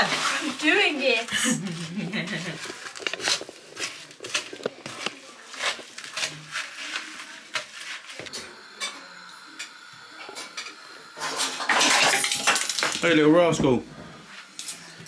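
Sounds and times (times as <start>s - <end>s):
spoon scraping a bowl: 0.0s - 8.3s.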